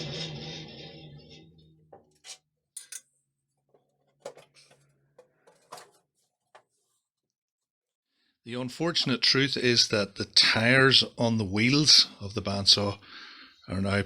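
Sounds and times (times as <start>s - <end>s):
low hum: 0.0s - 1.9s.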